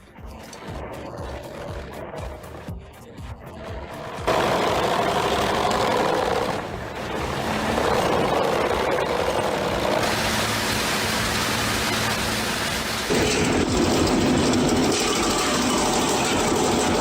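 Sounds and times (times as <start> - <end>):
wood chipper running: 3.8 - 17.0.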